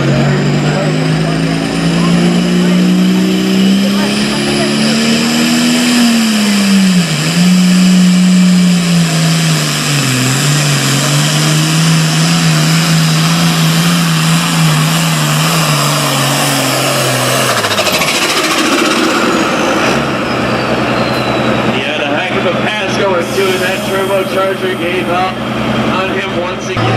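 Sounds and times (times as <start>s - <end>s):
announcer speaking: 0.0s - 5.8s, 21.7s - 26.9s
high turbo whine: 0.0s - 26.9s
tractor engine running hard: 0.0s - 26.9s.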